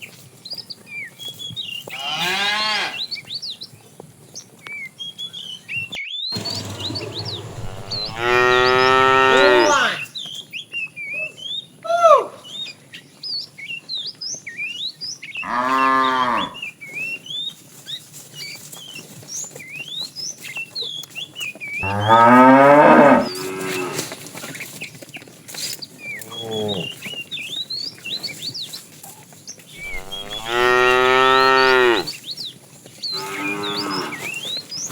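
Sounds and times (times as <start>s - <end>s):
small birds chirping: 3.0s - 11.8s, 24.4s - 34.9s
cattle mooing: 6.4s - 10.0s, 15.5s - 16.6s, 21.8s - 24.1s, 29.8s - 32.1s.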